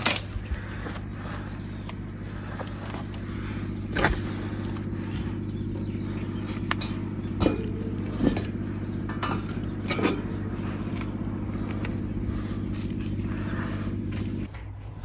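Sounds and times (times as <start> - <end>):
low mechanical hum: 0.0 - 15.0
sharp knocks and clinks: 6.5 - 10.3.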